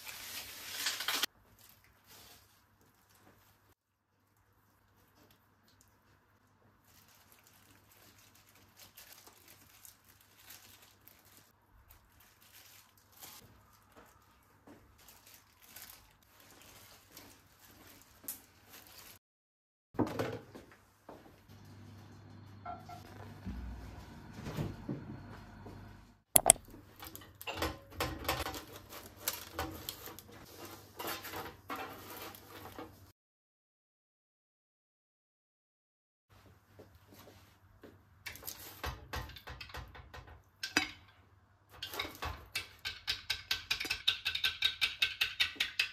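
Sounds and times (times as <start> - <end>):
light clicks of objects handled: 26.4 - 26.6.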